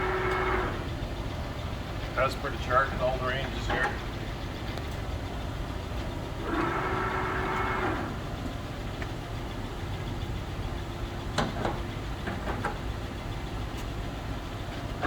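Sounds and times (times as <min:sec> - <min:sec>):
lathe mechanical rumble: 0:00.0 - 0:15.0
lathe whine: 0:06.2 - 0:08.5.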